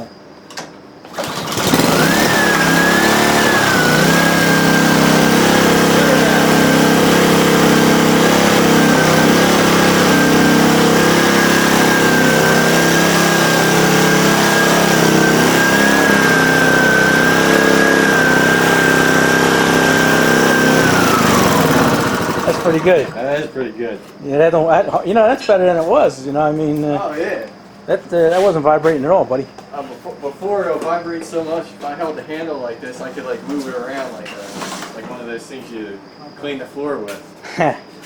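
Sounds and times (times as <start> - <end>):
lawnmower engine running: 1.1 - 23.4.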